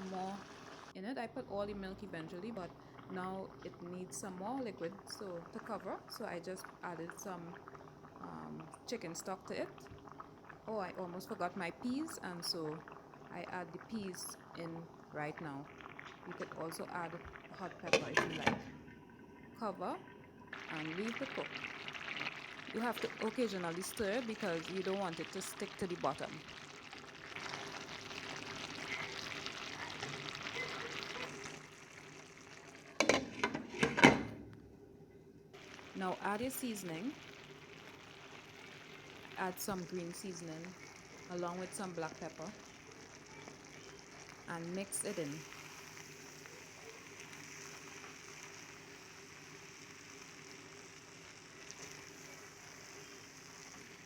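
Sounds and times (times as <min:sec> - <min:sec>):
rice sizzling as stirred: 0:20.5 - 0:33.8, 0:35.6 - 0:54.0.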